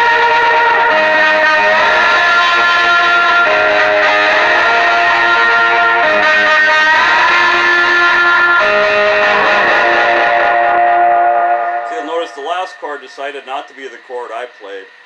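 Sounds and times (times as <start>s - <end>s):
slide electric guitar: 0.0s - 15.0s
man talking: 11.9s - 15.0s.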